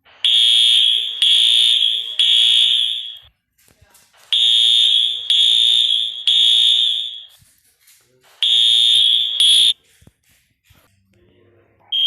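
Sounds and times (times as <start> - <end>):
fire alarm horn blasts: 0.2 - 3.3, 4.4 - 7.4, 8.4 - 9.8.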